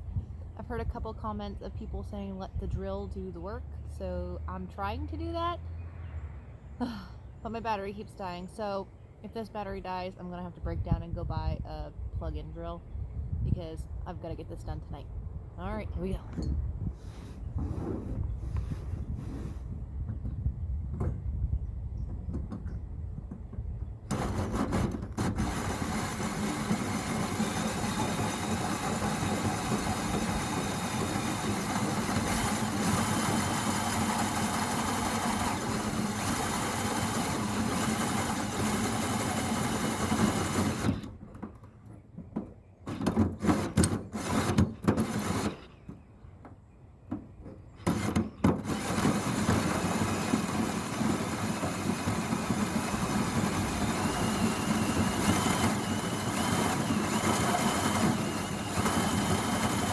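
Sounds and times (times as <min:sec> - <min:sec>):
cordless drill running: 0:24.1 - 0:41.1, 0:47.9 - 0:59.9.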